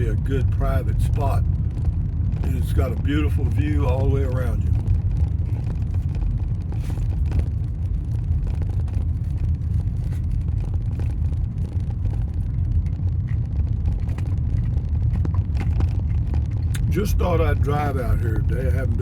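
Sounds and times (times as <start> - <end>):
vehicle engine and tyres rumbling: 0.0 - 19.0.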